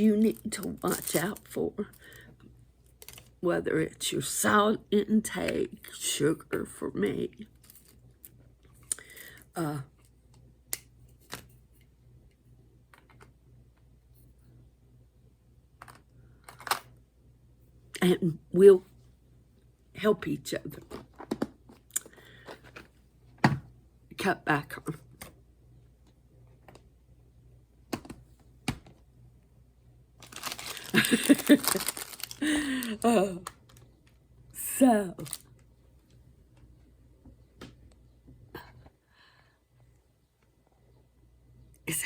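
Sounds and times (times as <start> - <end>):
paper or plastic crinkling: 0.2 - 1.5, 30.2 - 34.2, 35.2 - 35.6.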